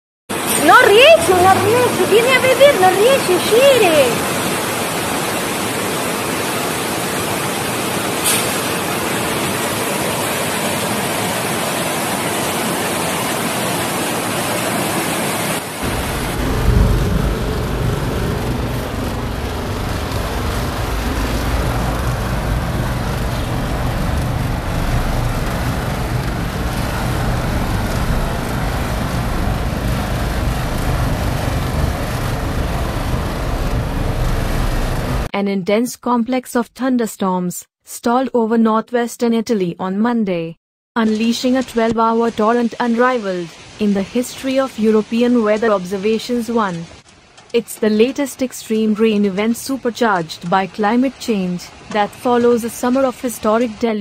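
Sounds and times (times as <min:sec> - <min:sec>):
rushing floodwater roar: 0:00.3 - 0:35.3.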